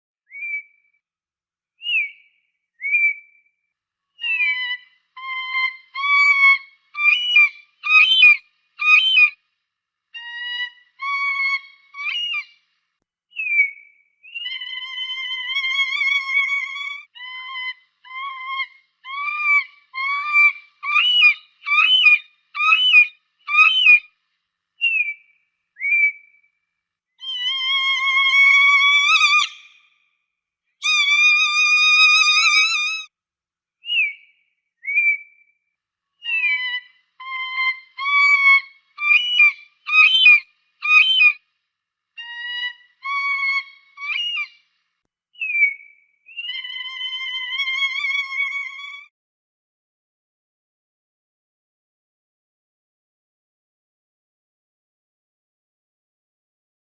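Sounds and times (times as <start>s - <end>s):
falcon piercing cries: 4.2s - 9.3s, 10.2s - 12.5s, 14.4s - 24.0s, 27.2s - 29.8s, 30.8s - 33.1s, 36.3s - 41.4s, 42.2s - 44.6s, 46.4s - 49.1s.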